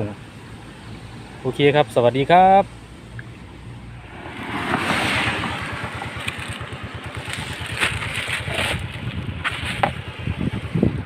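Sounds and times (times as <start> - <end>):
small motorcycle engine puttering: 4.7 - 11.0.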